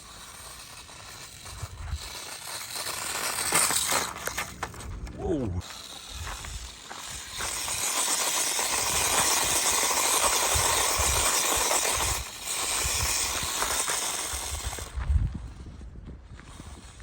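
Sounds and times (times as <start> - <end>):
rc truck tyres churning gravel: 0.0 - 17.0.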